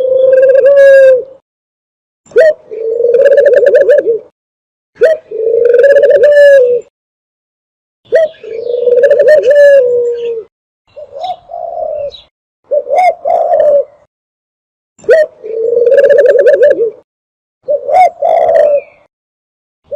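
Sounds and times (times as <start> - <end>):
dove cooing: 0.0 - 1.4, 2.4 - 4.3, 5.0 - 6.9, 8.1 - 14.1, 15.0 - 17.0, 17.6 - 19.1.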